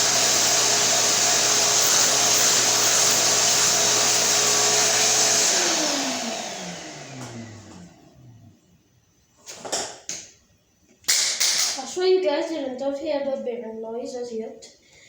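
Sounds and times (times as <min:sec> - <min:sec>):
vacuum cleaner motor spinning down: 0:00.0 - 0:08.5.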